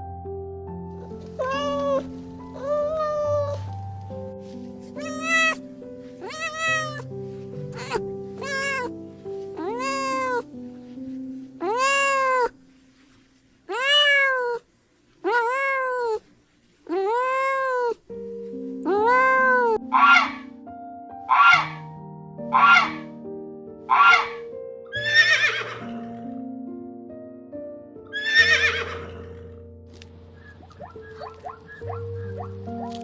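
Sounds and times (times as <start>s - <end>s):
light background music: 0.0s - 13.7s, 17.1s - 33.0s
cat meowing: 1.3s - 3.8s, 4.9s - 5.6s, 6.2s - 8.9s, 9.6s - 10.5s, 11.6s - 12.5s, 13.7s - 14.6s, 15.2s - 16.2s, 16.9s - 18.0s, 18.9s - 20.4s.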